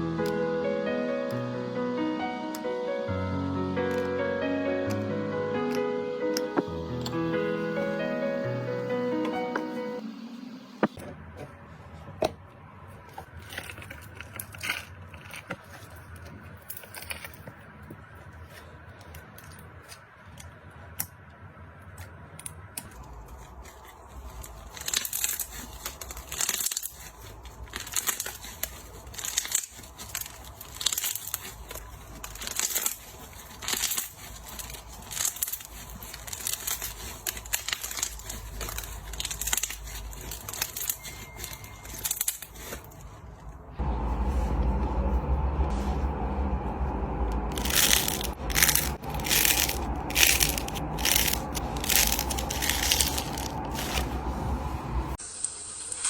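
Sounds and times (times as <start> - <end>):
crunchy slime crackling: 23.0 - 43.3, 47.5 - 54.4.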